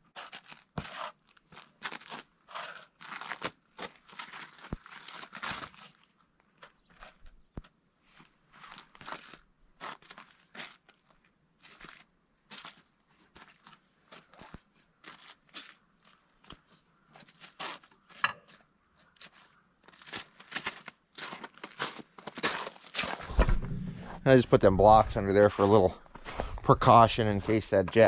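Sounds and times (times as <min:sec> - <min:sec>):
footsteps crunching: 0:08.2 - 0:28.0
sharp knock: 0:23.2 - 0:24.4.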